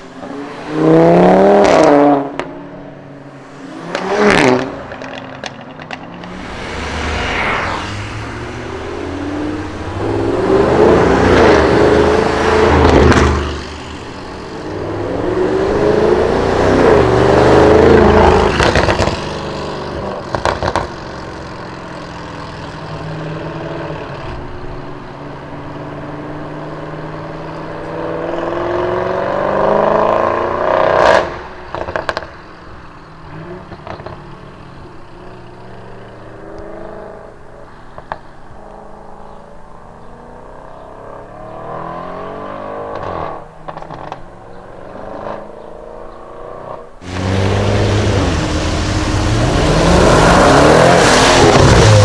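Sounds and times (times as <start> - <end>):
exhaust crackles and pops: 4.9 - 21.7, 47.0 - 52.0
car engine accelerating hard: 6.2 - 24.9, 47.0 - 52.0.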